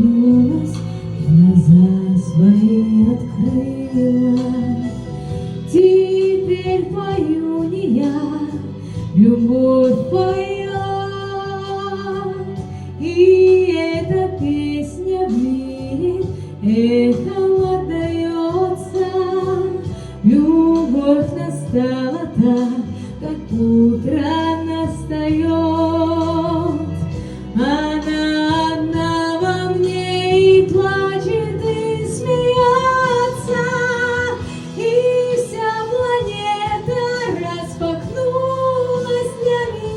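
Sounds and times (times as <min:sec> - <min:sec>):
instrumental accompaniment: 0:00.0 - 0:39.9
woman singing love song: 0:00.0 - 0:39.9.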